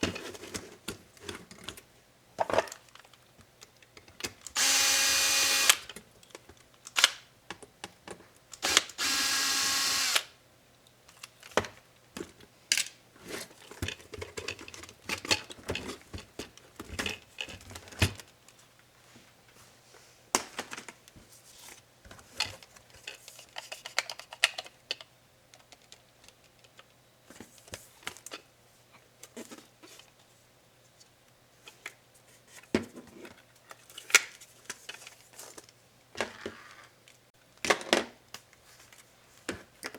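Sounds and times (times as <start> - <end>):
electric screwdriver whirring: 4.6 - 5.9, 8.6 - 10.3.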